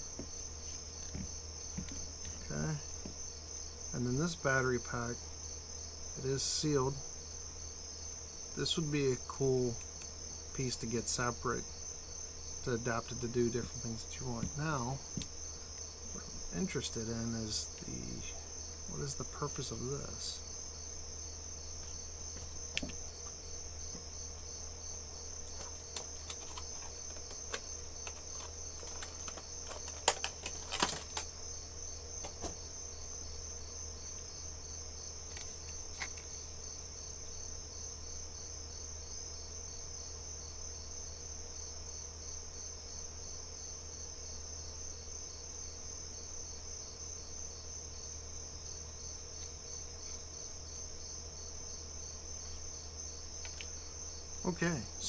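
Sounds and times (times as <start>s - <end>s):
crickets chirping: 0.0s - 55.0s
plastic clicks and rattles: 25.5s - 31.3s.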